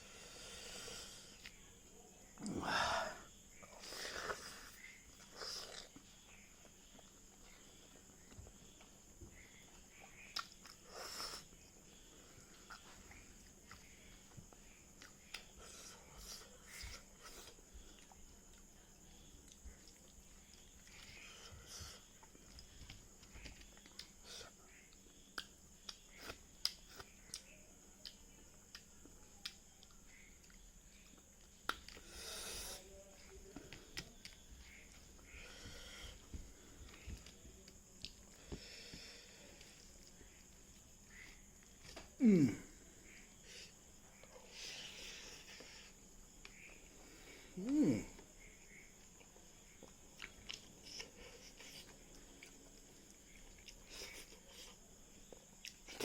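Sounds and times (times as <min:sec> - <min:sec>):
breathy burst: 0:02.5 - 0:03.2
person chewing food: 0:03.8 - 0:09.0, 0:11.9 - 0:32.1, 0:49.0 - 0:56.0
wet chewing and smacking: 0:09.6 - 0:10.8, 0:49.0 - 0:56.0.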